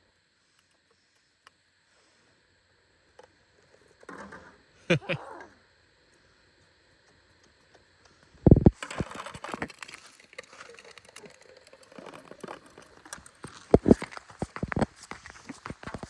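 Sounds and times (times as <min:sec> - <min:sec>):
heavy thumps: 0:08.5 - 0:08.8
footsteps crunching on snow: 0:13.4 - 0:16.0.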